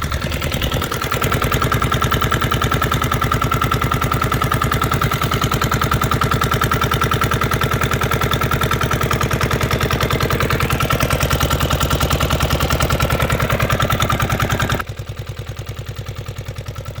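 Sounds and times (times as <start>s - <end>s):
boat engine running: 0.0s - 14.8s.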